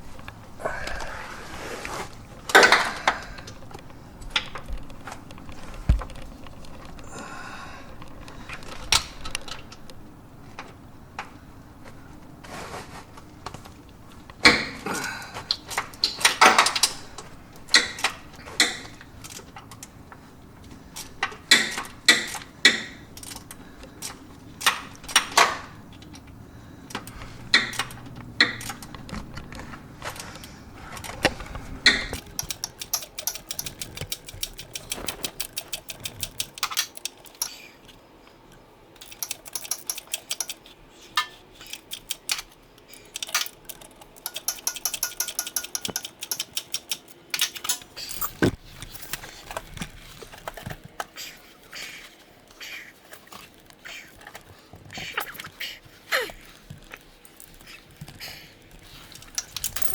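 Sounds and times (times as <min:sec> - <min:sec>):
socket ratchet clicking: 0:31.8 - 0:37.8, 0:39.0 - 0:48.4, 0:59.1 - 0:59.9
metal tool clinks and knocks: 0:31.9 - 0:37.7, 0:39.0 - 0:49.1, 0:59.2 - 0:59.9.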